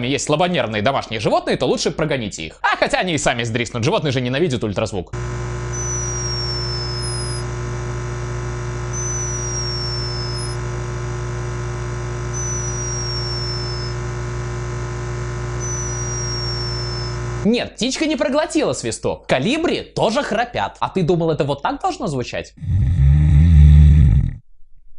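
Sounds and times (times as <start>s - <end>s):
hummingbird snoring whistles: 5.8s - 7.4s, 8.9s - 10.6s, 12.3s - 14.0s, 15.6s - 17.2s.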